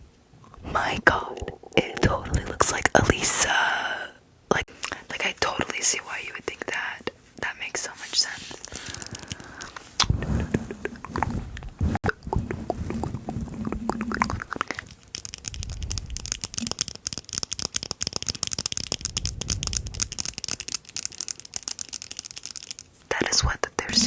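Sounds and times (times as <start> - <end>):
scratchy hissing rustle: 7.7 - 11.9
stomach growling: 10.0 - 16.8.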